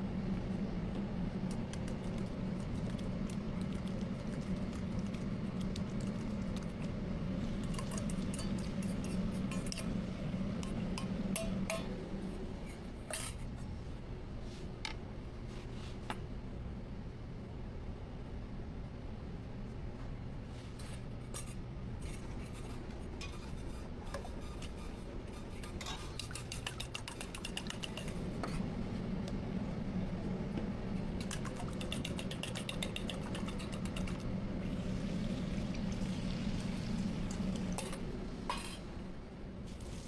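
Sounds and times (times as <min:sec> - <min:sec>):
metal utensils scraping pans: 0:22.1 - 0:28.2, 0:37.8 - 0:38.8.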